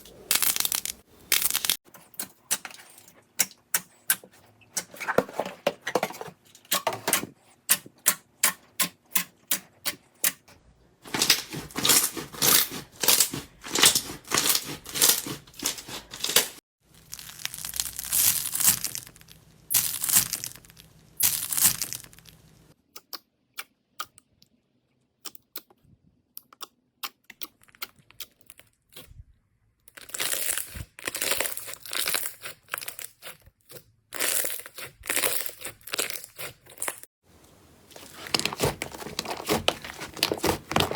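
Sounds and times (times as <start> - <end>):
slime crackling and popping: 0.3 - 1.8, 17.0 - 22.6.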